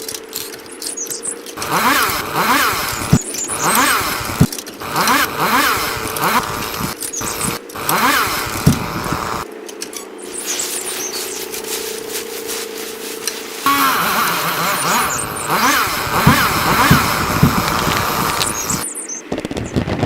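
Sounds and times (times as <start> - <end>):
chainsaw engine revving: 1.6 - 9.5, 13.6 - 19.7.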